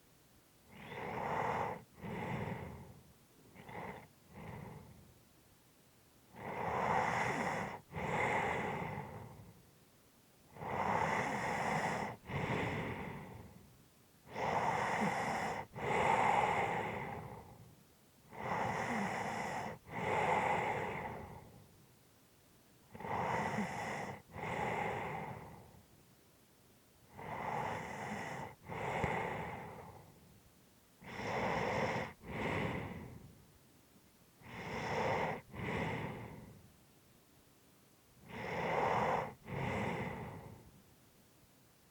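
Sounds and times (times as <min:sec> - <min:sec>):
slow heavy breathing: 0:00.7 - 0:05.2, 0:06.4 - 0:09.6, 0:10.5 - 0:13.7, 0:14.3 - 0:17.7, 0:18.3 - 0:21.8, 0:22.9 - 0:25.9, 0:27.1 - 0:30.4, 0:31.0 - 0:33.4, 0:34.4 - 0:36.8, 0:38.2 - 0:40.8.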